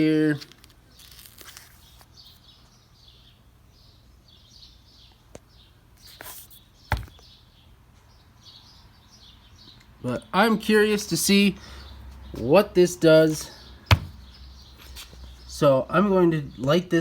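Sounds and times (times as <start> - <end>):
faint birds chirping: 0.0 - 17.0
sharp knocks: 13.9 - 14.3.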